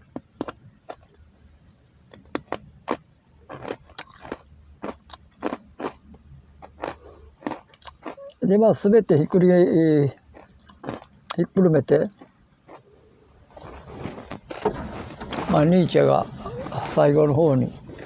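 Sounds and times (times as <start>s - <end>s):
small sharp clicks and crunches: 0.0s - 8.2s
faint low hum: 0.0s - 18.0s.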